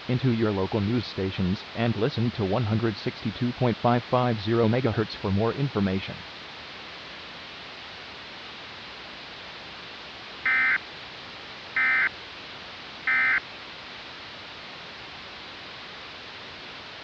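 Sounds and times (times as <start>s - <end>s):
steady hiss: 0.0s - 17.0s
short data-tone bursts: 10.5s - 10.8s, 11.8s - 12.1s, 13.1s - 13.4s.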